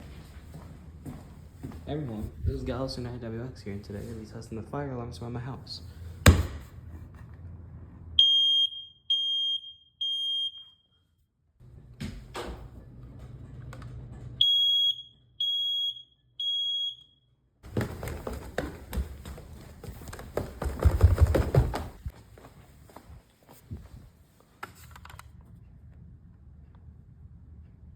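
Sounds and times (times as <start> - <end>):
smoke alarm beeping: 8.2 - 11.0, 14.4 - 17.4
knocking and rustling: 17.6 - 22.2.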